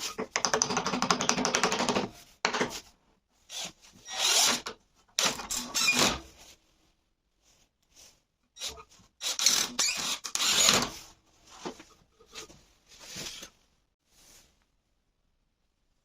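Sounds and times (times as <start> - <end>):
wood and tools scraping: 8.6 - 13.6.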